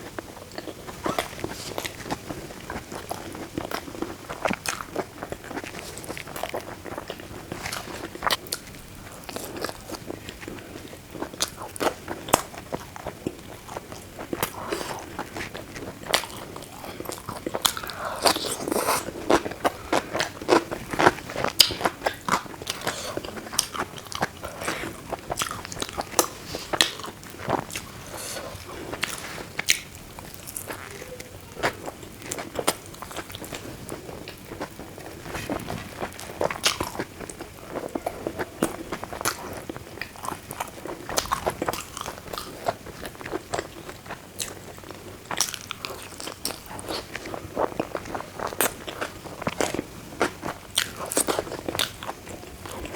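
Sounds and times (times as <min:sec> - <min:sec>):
chewing and biting: 0:00.3 - 0:31.0, 0:31.6 - 0:52.9.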